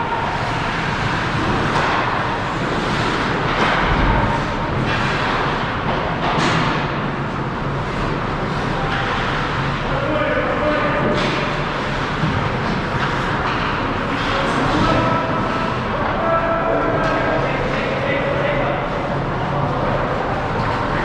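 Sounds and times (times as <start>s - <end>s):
skates rushing on ice: 0.2s - 6.6s
hockey sticks and puck knocking: 1.6s - 6.9s, 11.0s - 15.1s.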